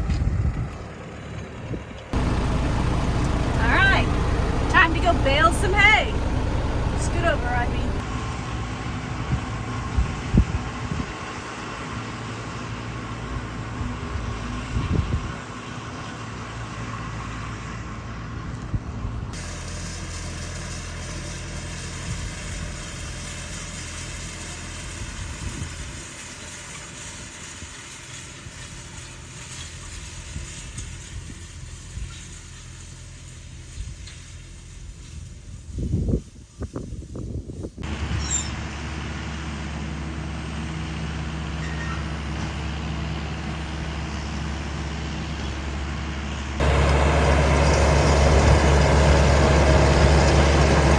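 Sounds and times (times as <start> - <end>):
tractor engine running: 0.1 - 8.9, 46.0 - 50.9.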